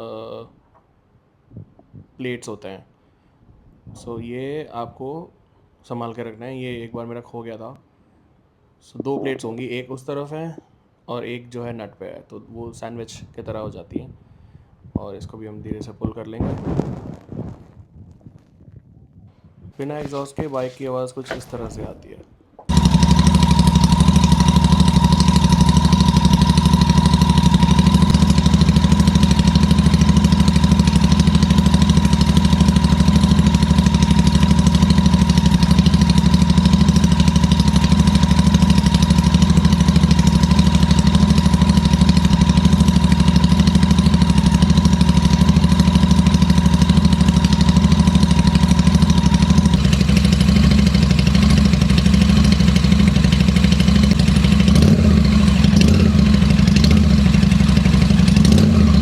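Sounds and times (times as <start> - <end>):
motorcycle engine idling: 22.7 - 59.0.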